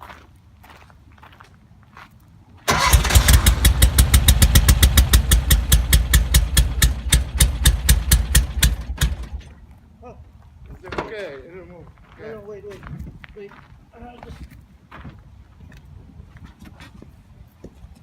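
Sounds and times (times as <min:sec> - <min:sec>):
engine cranking on starter: 0:02.7 - 0:09.6.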